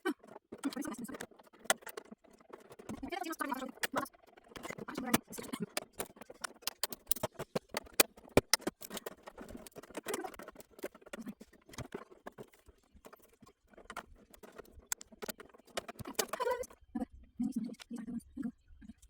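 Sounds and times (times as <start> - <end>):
sharp clicks of small hard objects: 0.2 - 16.7.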